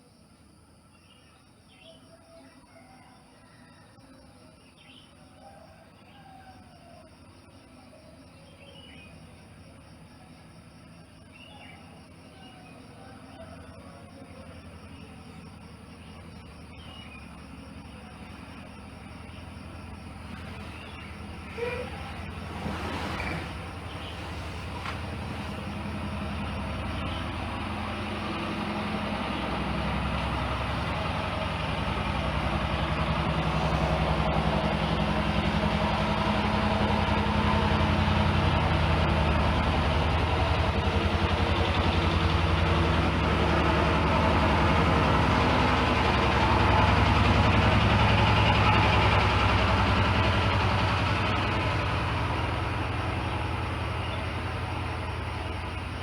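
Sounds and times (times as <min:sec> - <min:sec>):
low engine rumble: 0:07.2 - 0:56.0.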